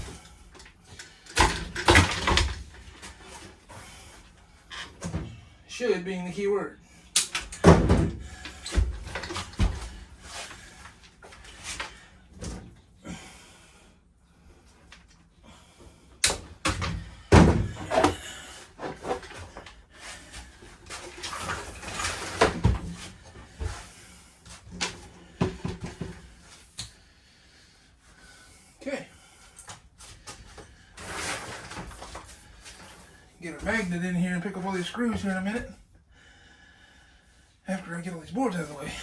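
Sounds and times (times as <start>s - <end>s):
wooden boards thumping and banging: 1.4s - 3.2s, 7.6s - 10.0s, 16.3s - 19.6s, 24.8s - 26.2s.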